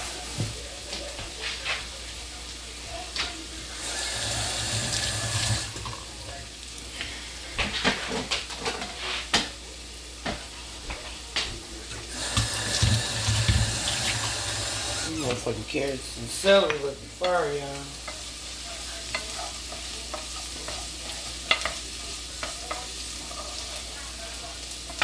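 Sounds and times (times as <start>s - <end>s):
kitchen tap running: 3.7s - 6.4s, 11.9s - 17.9s
kitchen utensils clattering: 7.6s - 9.5s.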